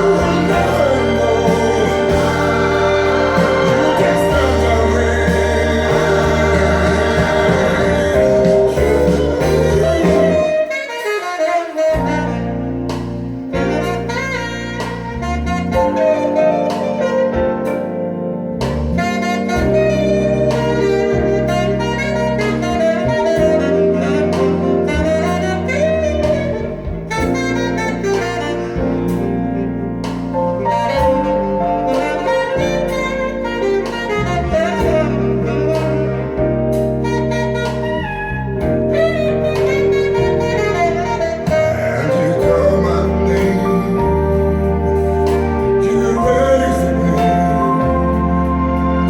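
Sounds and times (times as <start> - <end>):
bass and drums: 0.0 - 10.6, 11.9 - 49.0
jazz saxophone solo: 0.0 - 49.0.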